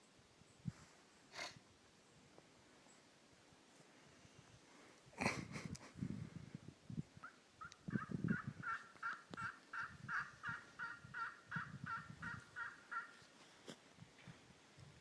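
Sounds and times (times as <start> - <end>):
turkey yelping: 7.2 - 13.2.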